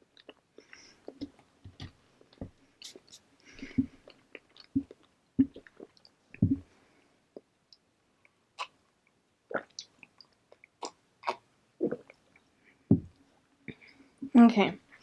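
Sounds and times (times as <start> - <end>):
person chewing food: 0.0 - 6.7, 9.5 - 13.9
mouth clicks and wet smacks: 0.1 - 6.6, 7.3 - 14.0.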